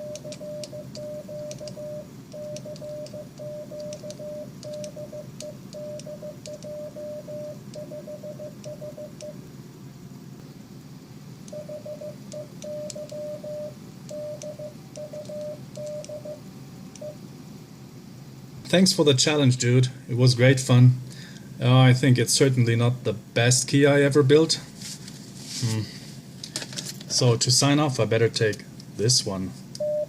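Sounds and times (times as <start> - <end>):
morse code sidetone beeping: 0.0 - 9.4, 11.5 - 16.4, 29.8 - 30.0.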